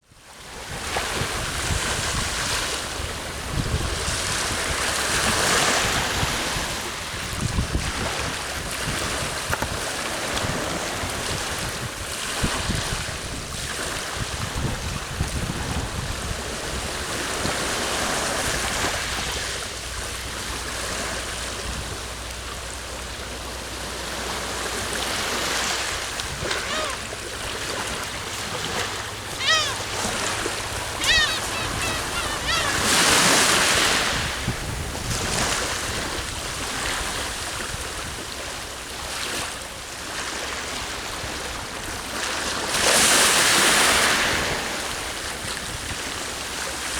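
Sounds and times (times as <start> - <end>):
sea waves washing ashore: 0.3 - 46.9
wind buffeting microphone: 0.7 - 22.8, 24.2 - 38.3.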